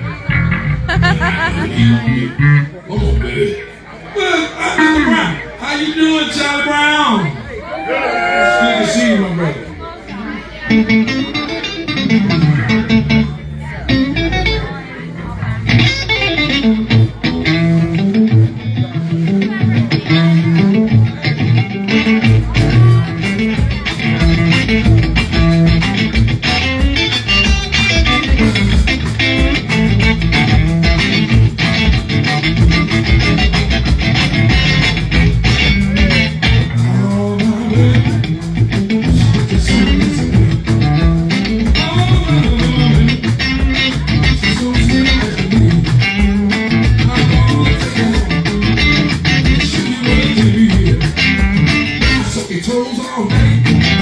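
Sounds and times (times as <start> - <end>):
bass guitar: 0.0 - 3.7, 9.8 - 54.0
steady drum beat: 0.9 - 1.6, 22.0 - 54.0
electric guitar lines: 10.1 - 54.0.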